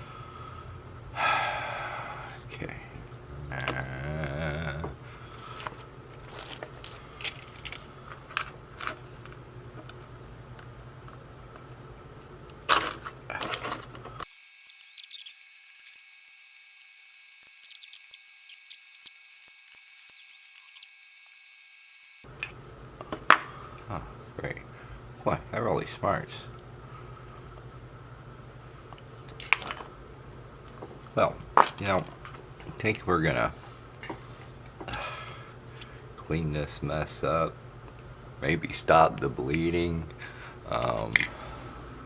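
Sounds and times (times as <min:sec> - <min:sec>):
faint high whine: 0:14.2 - 0:22.3.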